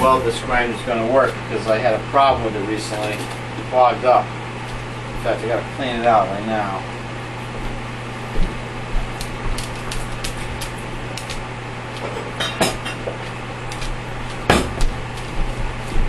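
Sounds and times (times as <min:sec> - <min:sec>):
low hum: 0:00.0 - 0:05.8.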